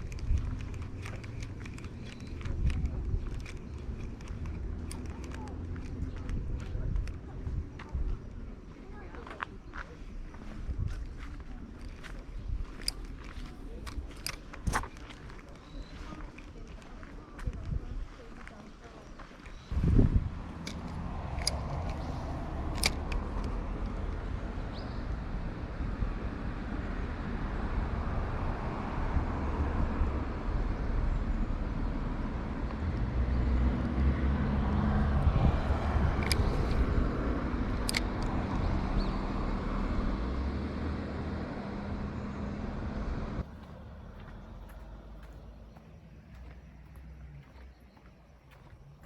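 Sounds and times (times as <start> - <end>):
sharp clicks: 0.0 - 7.9, 11.1 - 17.1, 20.5 - 24.2, 35.6 - 39.2
motor vehicle engine rumble: 0.0 - 49.0.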